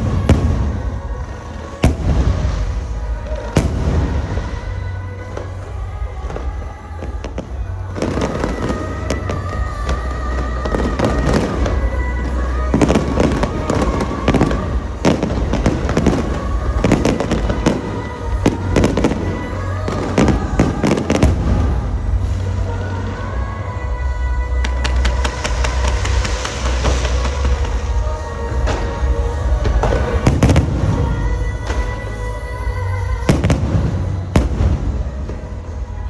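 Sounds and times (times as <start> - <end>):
fireworks bangs and crackling: 0.0 - 36.0
music playing: 0.0 - 36.0.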